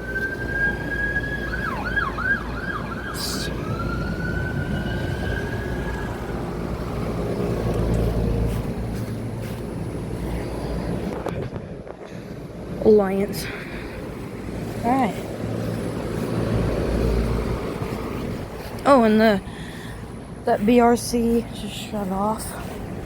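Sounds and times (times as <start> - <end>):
emergency vehicle siren: 0.0 - 11.2.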